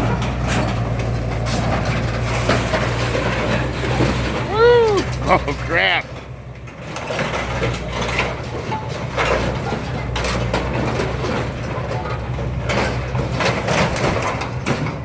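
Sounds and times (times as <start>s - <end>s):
heavy machine engine running: 0.0s - 15.0s
metal crunches and bangs: 5.1s - 15.0s.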